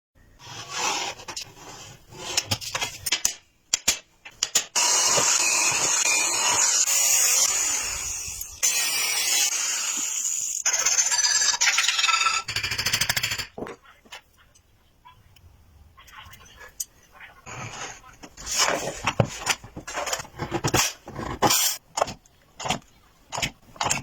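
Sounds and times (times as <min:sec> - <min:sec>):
power tool hissing: 0:04.8 - 0:10.6.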